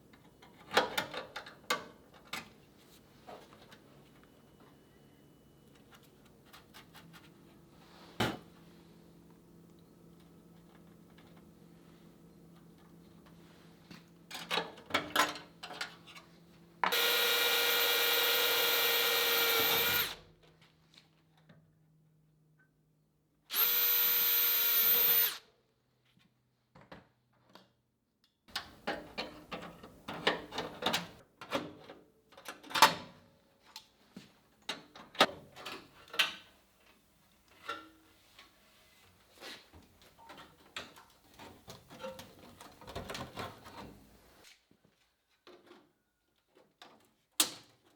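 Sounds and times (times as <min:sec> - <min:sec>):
power tool whining: 0:16.9 - 0:20.2, 0:23.5 - 0:25.4.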